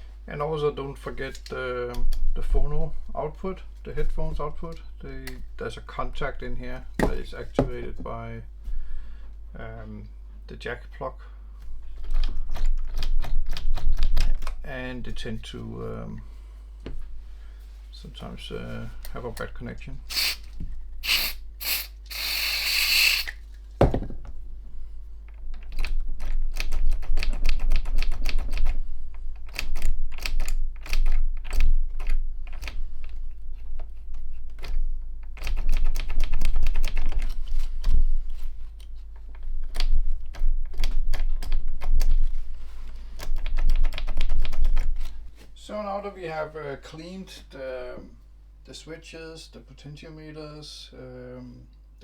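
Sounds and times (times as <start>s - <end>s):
short hissing bursts: 20.0s - 23.4s
rapid mechanical clicking of switches: 25.3s - 33.2s, 34.5s - 42.2s.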